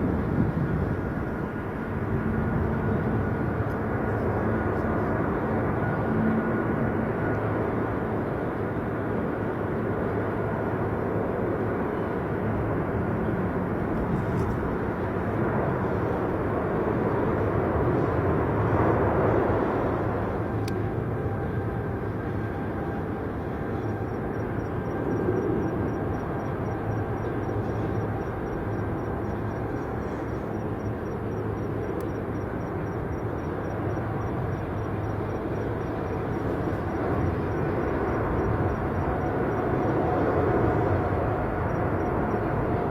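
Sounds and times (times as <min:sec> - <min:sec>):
jet engines rumbling: 0:00.0 - 0:06.0, 0:11.5 - 0:42.9.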